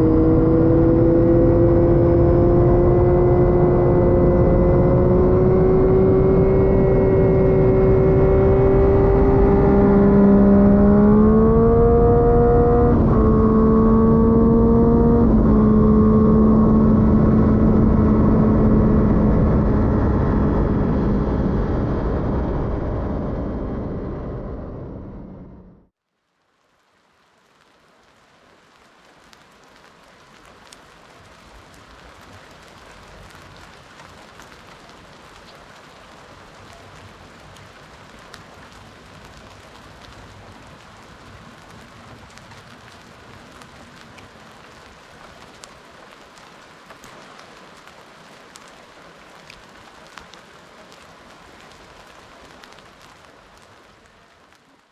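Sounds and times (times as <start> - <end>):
steady rain falling: 0.0 - 24.2, 26.0 - 54.9
sharp rain drop taps: 26.8 - 54.9.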